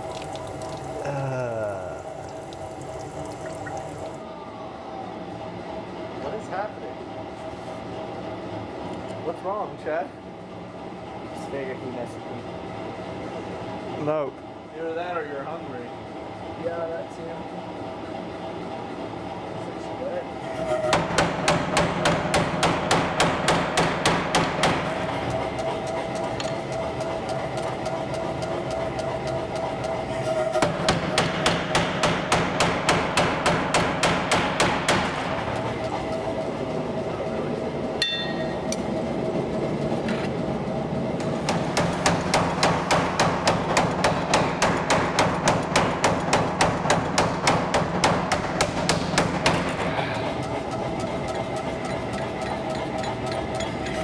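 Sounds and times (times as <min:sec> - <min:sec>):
machine hum: 0:00.0 - 0:54.0
power hammer striking steel: 0:20.8 - 0:25.0, 0:30.6 - 0:35.2, 0:38.0 - 0:38.8, 0:41.4 - 0:50.0
ringing metal clang: 0:38.0 - 0:38.6.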